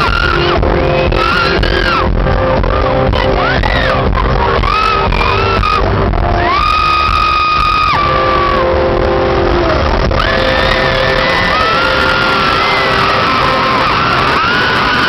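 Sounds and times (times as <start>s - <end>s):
live pop band: 0.0s - 15.0s
crowd shouting: 10.2s - 15.0s.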